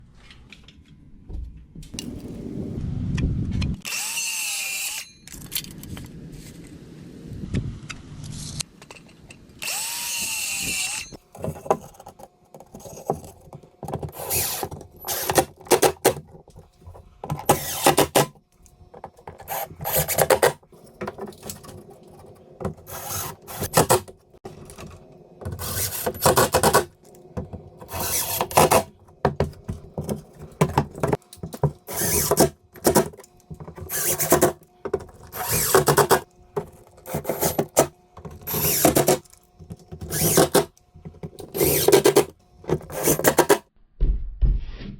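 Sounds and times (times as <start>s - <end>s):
power drill driving screws: 3.8s - 5.1s, 9.6s - 11.2s, 14.1s - 15.9s, 17.4s - 18.3s, 22.9s - 24.0s, 25.6s - 26.8s, 27.9s - 28.9s, 31.9s - 32.5s, 33.9s - 34.6s, 35.3s - 36.2s, 37.1s - 39.3s, 40.0s - 40.7s, 41.5s - 43.6s.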